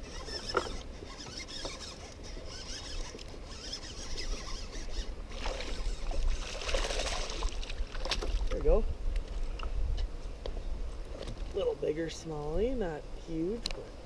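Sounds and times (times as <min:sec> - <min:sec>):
fishing reel cranking: 0:00.0 - 0:07.5
low wind rumble: 0:02.2 - 0:14.0.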